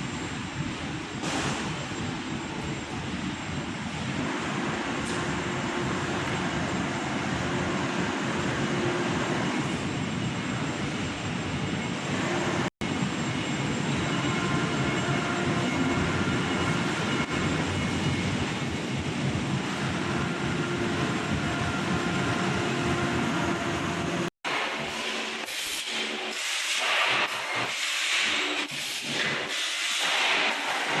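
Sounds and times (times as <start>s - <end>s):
factory machinery din: 0.4s - 31.0s.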